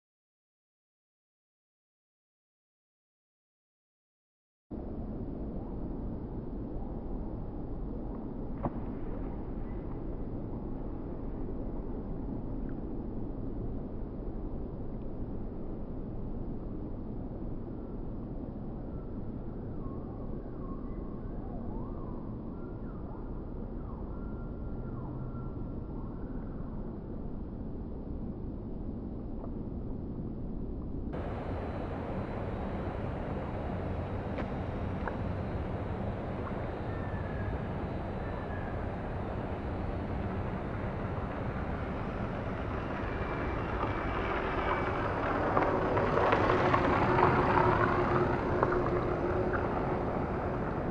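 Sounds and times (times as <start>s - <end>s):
low outdoor rumble: 25.8s - 50.9s
engine passing: 31.2s - 50.9s.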